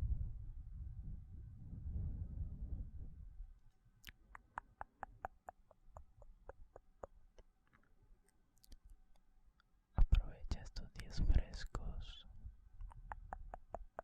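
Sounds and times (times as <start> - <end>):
tongue smacks: 4.0 - 7.9, 8.6 - 8.9, 12.8 - 14.0
wet mouth clicks: 4.0 - 7.9, 8.6 - 9.2, 12.8 - 14.0.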